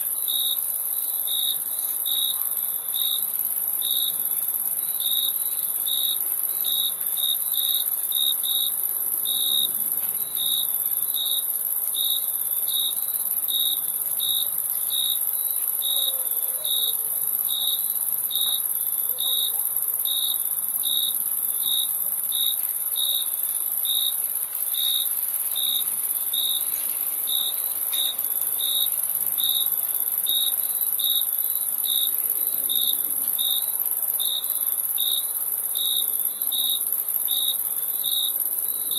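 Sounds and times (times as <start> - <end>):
crickets chirping: 0.0 - 38.9.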